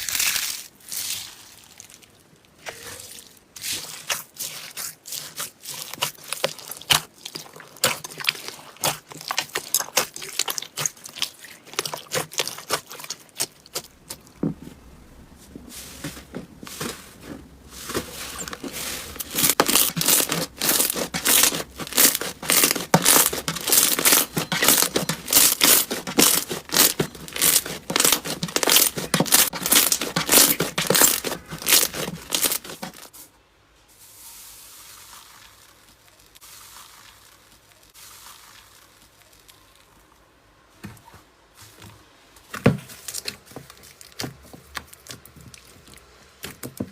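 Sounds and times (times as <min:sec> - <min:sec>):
slime crackling and popping: 0:03.6 - 0:14.3, 0:19.2 - 0:33.1, 0:34.9 - 0:40.3.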